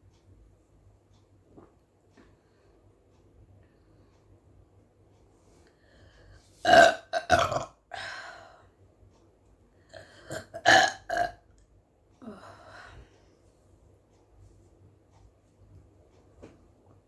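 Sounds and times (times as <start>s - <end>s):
woman burping: 6.6s - 8.2s, 10.0s - 11.4s.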